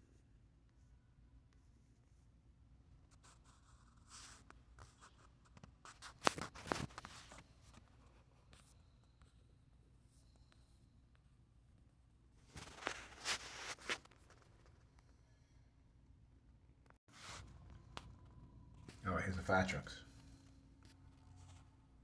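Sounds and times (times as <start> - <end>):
close scratching and rustling: 3.2 - 8.8, 12.4 - 14.9.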